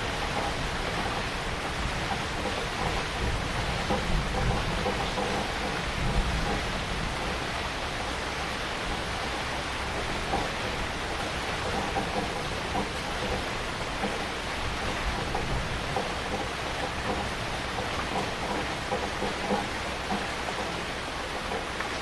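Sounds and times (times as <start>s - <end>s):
heavy rain falling: 0.0s - 22.0s
raindrops hitting a surface: 0.0s - 22.0s.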